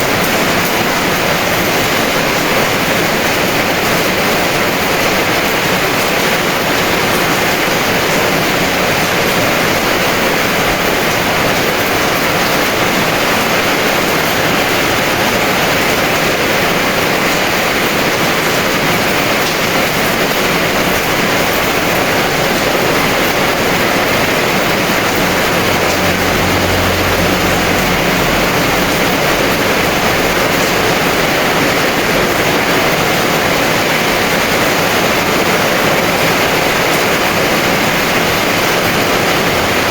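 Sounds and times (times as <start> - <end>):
heavy rain hissing: 0.0 - 39.9
low rumble: 23.8 - 32.2.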